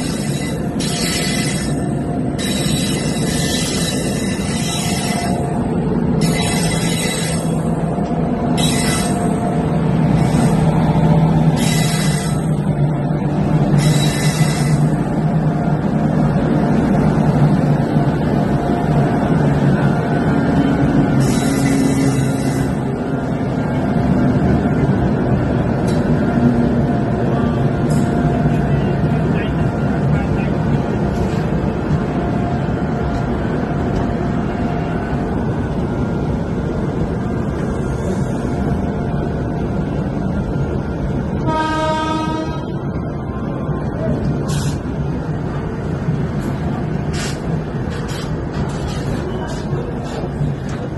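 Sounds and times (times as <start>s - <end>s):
moving train rumble: 0.0s - 50.9s
train horn blast: 21.2s - 22.8s, 41.4s - 42.8s.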